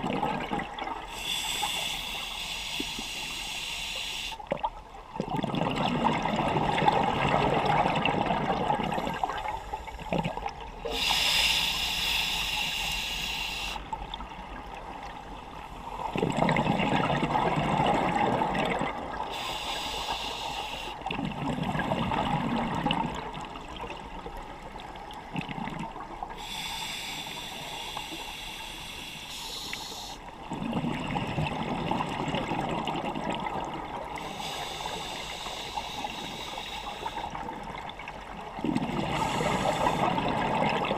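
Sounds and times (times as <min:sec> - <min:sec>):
regulator hissing inhalations: 0:01.1 - 0:04.4, 0:10.8 - 0:13.8, 0:19.3 - 0:21.0, 0:26.4 - 0:30.2, 0:34.2 - 0:37.4, 0:39.1 - 0:40.1
bubbling gurgling exhalations: 0:05.2 - 0:09.4, 0:38.5 - 0:40.9.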